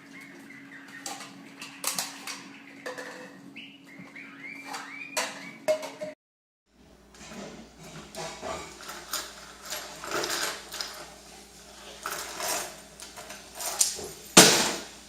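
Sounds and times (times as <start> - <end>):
bird chirping: 0.0 - 5.8
knocks and clattering: 1.0 - 3.5.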